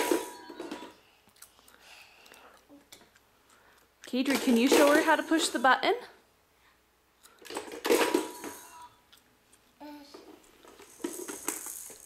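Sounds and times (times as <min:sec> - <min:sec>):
child vocal sound: 0:09.8 - 0:10.2
gumball machine rattling: 0:10.8 - 0:12.0.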